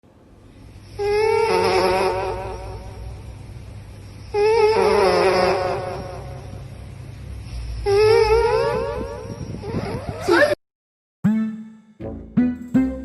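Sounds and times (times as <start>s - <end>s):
cat snoring: 0.8s - 3.3s, 4.2s - 6.6s, 7.5s - 8.8s.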